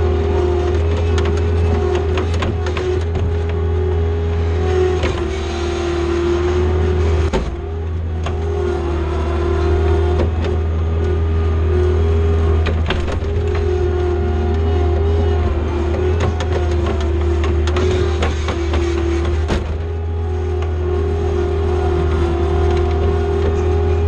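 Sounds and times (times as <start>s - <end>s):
diesel engine running under load: 0.0s - 24.0s
hydraulic whine: 0.0s - 24.0s
machine clanks and knocks: 0.5s - 3.8s, 7.0s - 8.9s, 12.2s - 20.8s.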